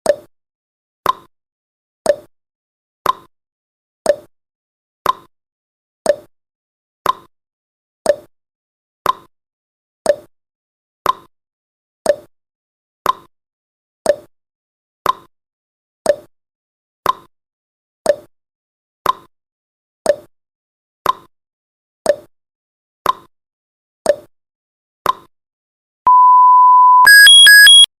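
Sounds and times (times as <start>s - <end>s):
high beeps: 26.1s - 27.9s
long steady beep: 26.1s - 27.9s.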